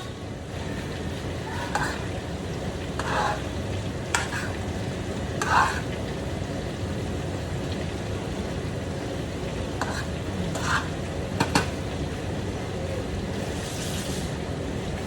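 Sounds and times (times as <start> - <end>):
utensil scraping a pan: 0.0 - 2.3, 2.9 - 4.7, 5.4 - 6.0, 9.8 - 11.8, 13.4 - 14.4
food sizzling in a pan: 0.0 - 14.6.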